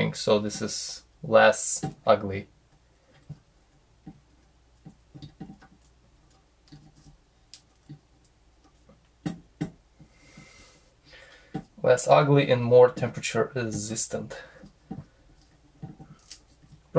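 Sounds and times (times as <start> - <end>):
clicks and taps of handling wires: 1.6 - 9.8, 11.5 - 11.8, 12.9 - 16.9.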